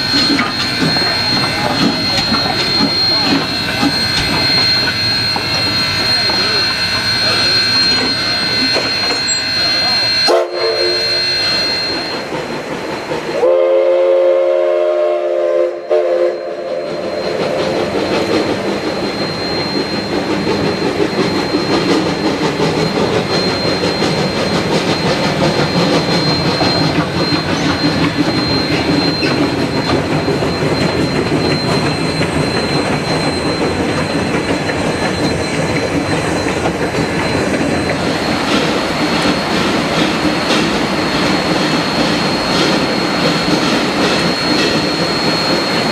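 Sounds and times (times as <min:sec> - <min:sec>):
train whistle: 0:00.0 - 0:12.2, 0:13.3 - 0:18.0
train rumble and wheel clatter: 0:00.0 - 0:45.9
thin steady high tone: 0:00.1 - 0:12.3.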